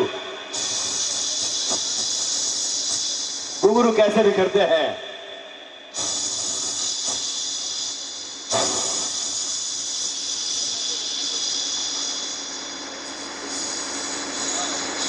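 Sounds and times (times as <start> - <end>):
man making hissing throat sounds: 0.0 - 3.8, 5.9 - 12.7.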